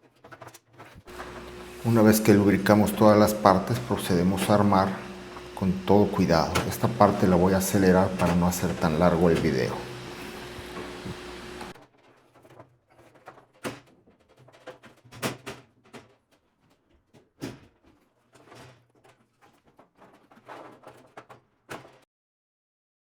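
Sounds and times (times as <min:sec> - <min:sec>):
machine parts clicking and clattering: 0:00.0 - 0:01.1, 0:11.8 - 0:22.0.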